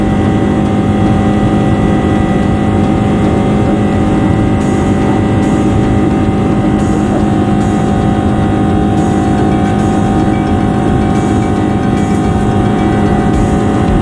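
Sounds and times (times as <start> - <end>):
constant low hum: 0.0 - 14.0
rushing wind and engine noise: 0.0 - 14.0.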